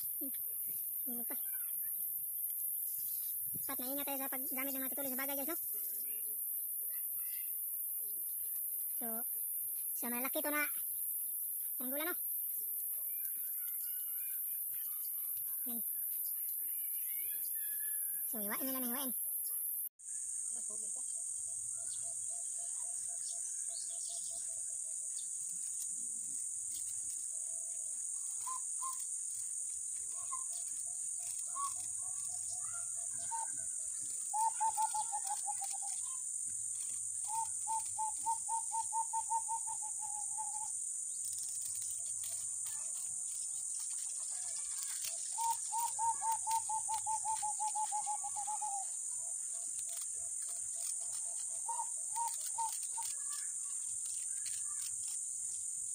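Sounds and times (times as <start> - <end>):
insects droning: 0.0 - 55.9
bird trilling: 30.1 - 36.2, 36.8 - 40.7, 44.8 - 48.9, 49.6 - 53.5.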